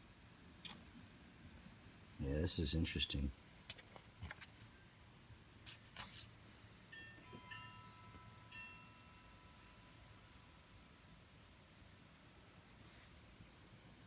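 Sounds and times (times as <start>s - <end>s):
paper rustling: 3.7s - 4.7s, 5.7s - 6.4s
faint ringing tone: 6.7s - 11.5s.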